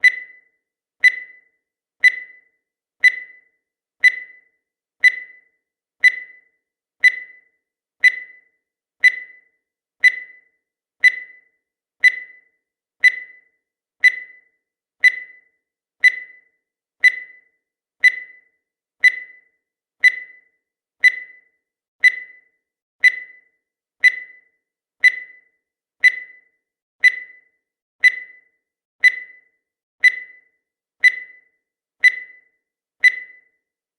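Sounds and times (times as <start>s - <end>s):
high-pitched electronic beeps: 0.0s - 6.4s.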